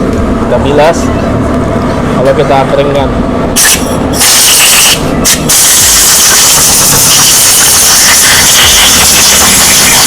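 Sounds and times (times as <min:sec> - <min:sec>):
air gun hissing: 0:03.6 - 0:10.0.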